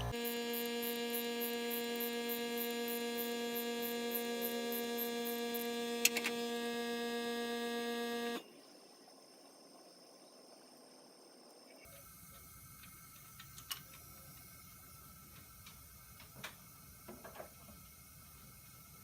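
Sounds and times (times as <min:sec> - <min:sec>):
steady electrical hum: 0:00.0 - 0:08.4.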